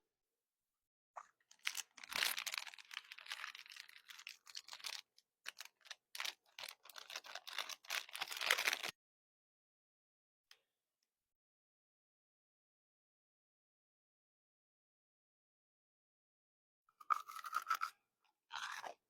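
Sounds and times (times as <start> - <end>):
candy crunching: 1.5 - 8.9, 17.0 - 17.9, 18.5 - 19.0
candy packaging crinkling: 1.5 - 8.9.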